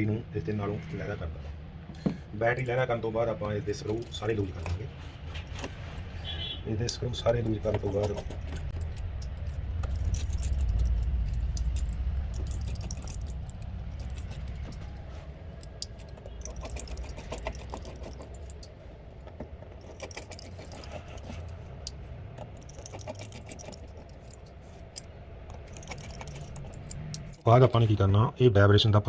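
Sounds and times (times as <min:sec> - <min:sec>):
steady low rumble: 0:00.0 - 0:28.5
small tools clicking: 0:06.8 - 0:27.5.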